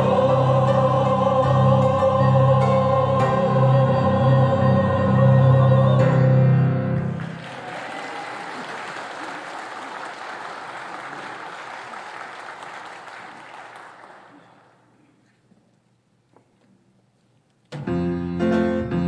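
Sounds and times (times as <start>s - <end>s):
choir singing: 0.0s - 7.2s
congregation applauding: 7.0s - 14.9s.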